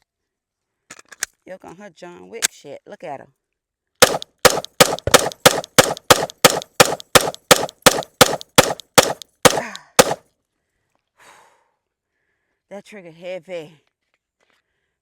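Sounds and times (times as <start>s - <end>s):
pistol shots: 4.0s - 10.2s.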